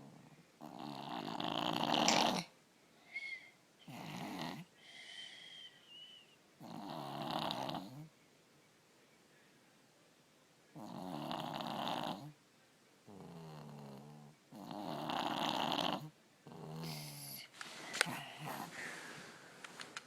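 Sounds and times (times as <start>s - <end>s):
child snoring: 0.6s - 2.5s, 6.6s - 8.1s, 10.8s - 12.3s, 13.1s - 17.5s.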